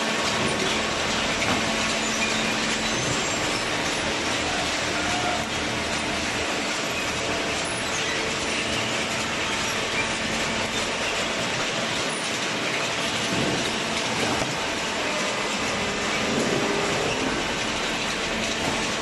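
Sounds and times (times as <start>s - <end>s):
machinery clatter and hiss: 0.0s - 19.0s.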